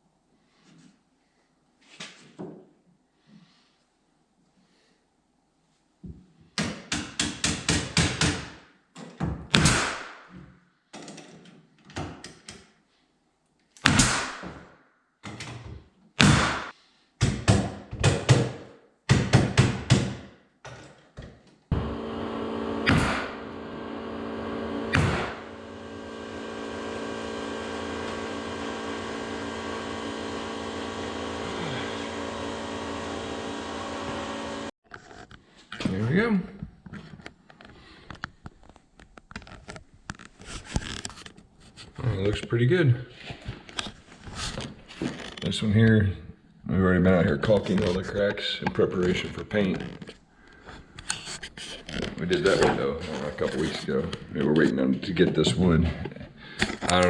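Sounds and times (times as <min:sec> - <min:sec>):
sharp hammer strikes: 0:09.6 - 0:10.2, 0:13.8 - 0:14.6, 0:16.2 - 0:16.7, 0:22.8 - 0:23.5, 0:24.9 - 0:25.5
motor humming: 0:21.7 - 0:34.7.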